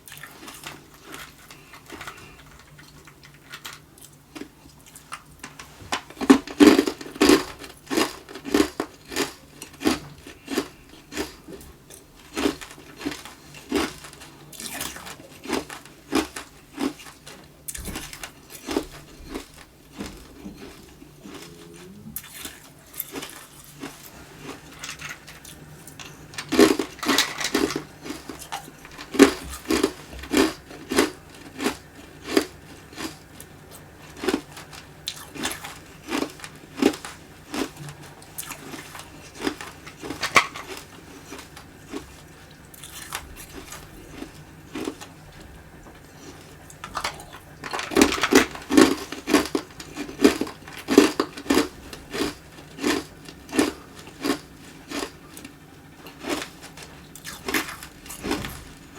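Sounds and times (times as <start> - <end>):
ice crunching while chewed: 0.0 - 58.9.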